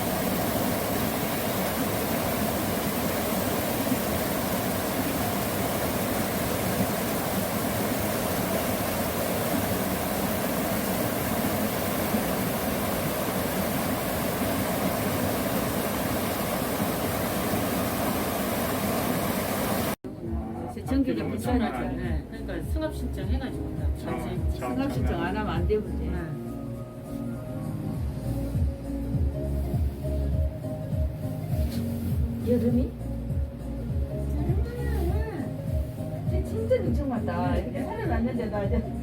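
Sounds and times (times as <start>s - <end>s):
stream water rushing: 0.0s - 20.0s.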